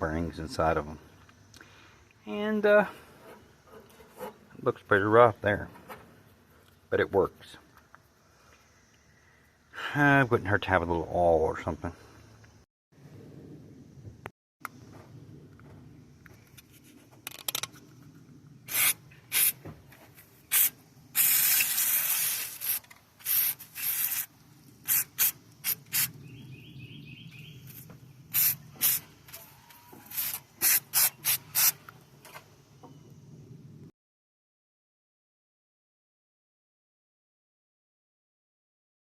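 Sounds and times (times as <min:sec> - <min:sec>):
spray can hissing: 0:18.7 - 0:19.6, 0:20.5 - 0:26.2, 0:28.3 - 0:31.8.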